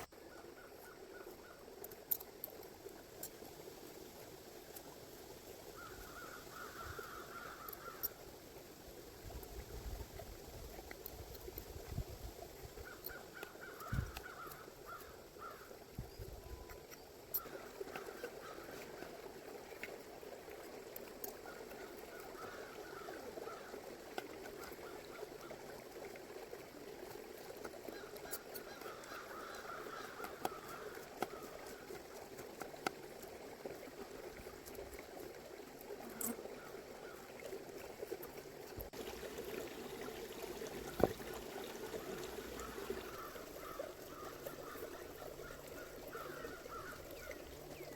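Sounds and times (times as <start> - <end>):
river flowing: 16.7 - 47.9.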